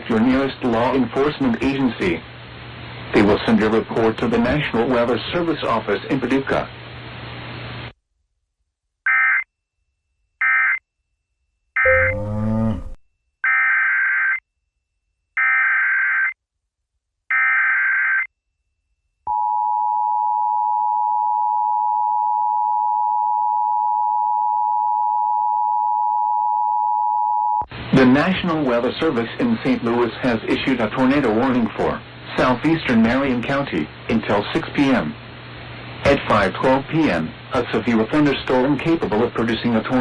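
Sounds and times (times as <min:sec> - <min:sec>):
harsh pitch-sweeping sound: 0:11.8 - 0:13.0
two-tone attention signal: 0:11.8 - 0:13.0.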